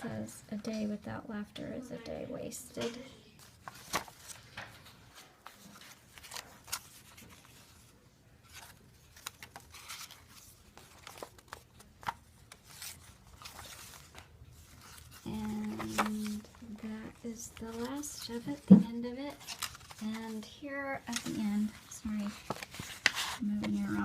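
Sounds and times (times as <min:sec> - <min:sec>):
paper pages rustling: 0:03.4 - 0:24.0
crisp paper clicks and snaps: 0:03.6 - 0:07.4, 0:08.5 - 0:16.5, 0:19.4 - 0:20.0, 0:22.2 - 0:23.8.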